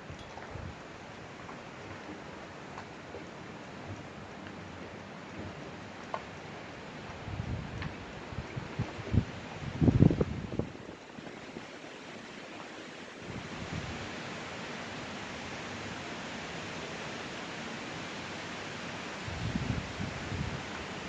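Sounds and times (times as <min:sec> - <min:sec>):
gusts buffeting the microphone: 0:00.0 - 0:12.5, 0:13.2 - 0:17.2, 0:18.1 - 0:21.0
steady wind rush: 0:07.2 - 0:11.1, 0:19.2 - 0:21.0.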